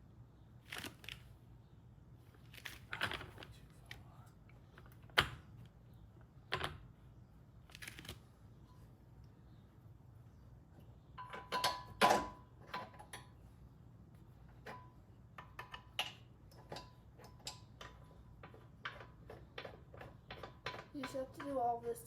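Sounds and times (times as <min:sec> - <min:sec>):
hand tools clicking and tapping: 0:11.2 - 0:13.3, 0:14.5 - 0:22.0.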